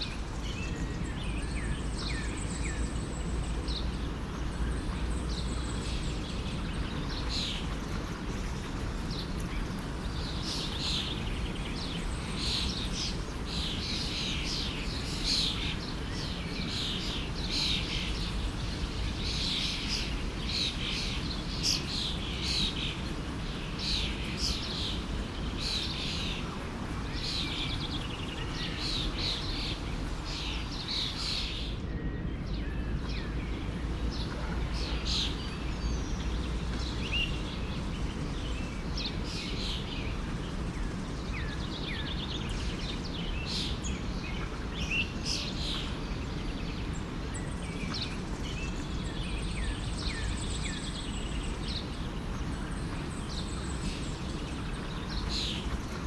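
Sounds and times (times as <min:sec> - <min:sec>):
small birds chirping and singing: 0:00.0 - 0:56.0
stream flowing: 0:33.4 - 0:56.0.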